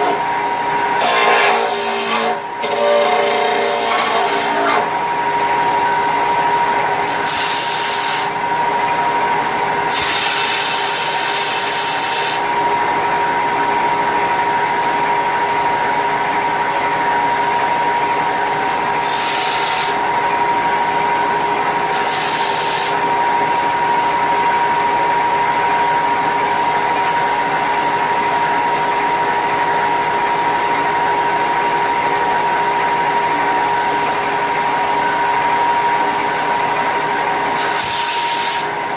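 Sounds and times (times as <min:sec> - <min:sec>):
harsh grinding hiss: 0:19.0 - 0:20.0.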